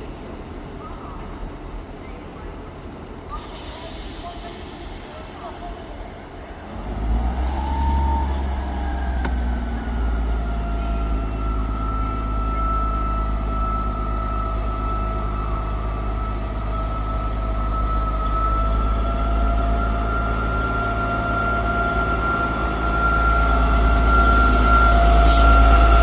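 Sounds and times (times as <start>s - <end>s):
deep diesel engine rumble: 0.0s - 26.0s
air hiss: 3.3s - 6.5s, 25.2s - 25.7s.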